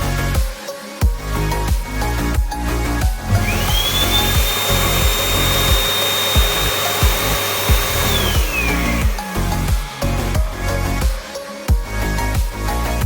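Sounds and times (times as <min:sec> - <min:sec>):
background music with steady beat: 0:00.0 - 0:13.0
hand dryer blowing: 0:03.0 - 0:10.5.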